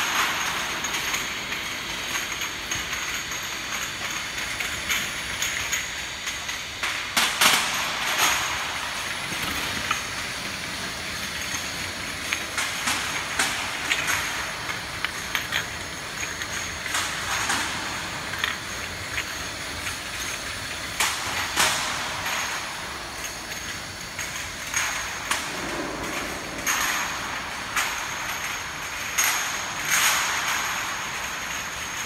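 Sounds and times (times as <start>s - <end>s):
bottle washing machine running: 0.0s - 32.0s
glass bottles clinking: 7.8s - 21.0s.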